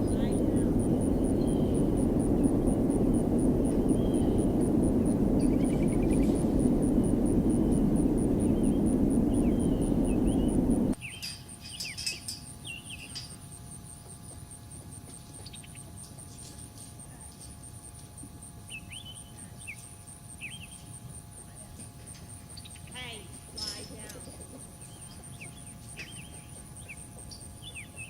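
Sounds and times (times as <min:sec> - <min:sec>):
insect chirping: 0:00.0 - 0:11.0
loud low rushing noise: 0:00.0 - 0:11.0
bird chirps: 0:00.0 - 0:11.2.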